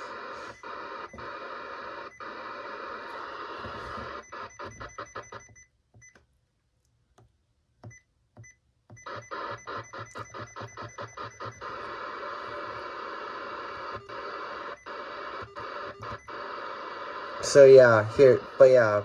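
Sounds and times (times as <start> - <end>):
radio static hiss: 0.0 - 5.2, 9.1 - 19.0
scanner blips and beeps: 0.0 - 6.2, 7.8 - 19.0.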